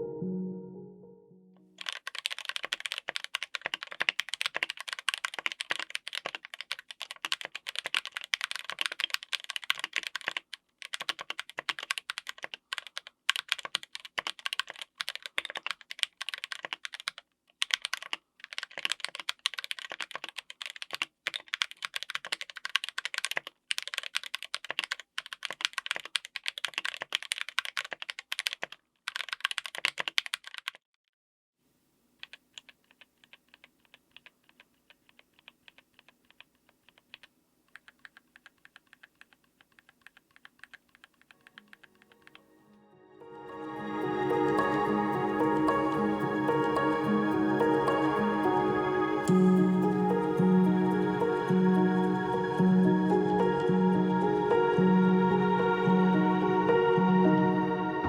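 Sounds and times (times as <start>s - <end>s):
mechanical keyboard typing: 1.8s - 30.8s, 32.2s - 42.4s.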